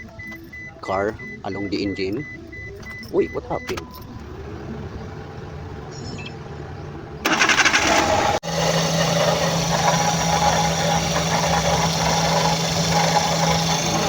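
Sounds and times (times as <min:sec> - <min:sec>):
car engine cranking and starting: 0:02.4 - 0:14.0
engine running with rattling: 0:04.0 - 0:14.0.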